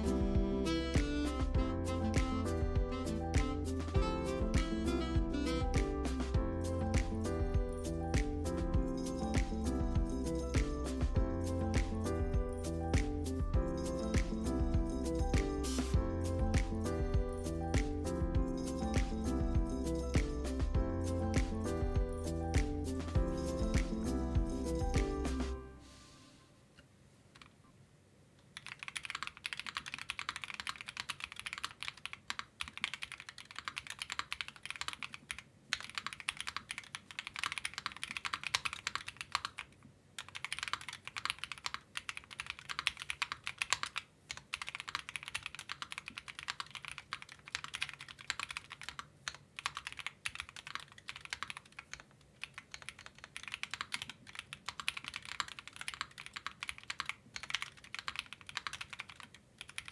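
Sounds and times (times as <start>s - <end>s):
mechanical keyboard typing: 28.6s - 59.9s.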